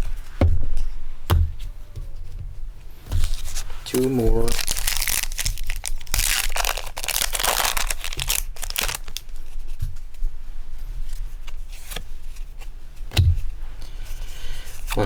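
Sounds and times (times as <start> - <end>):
heavy knock: 1.3 - 2.1
foil wrapper tearing and crinkling: 3.2 - 9.4.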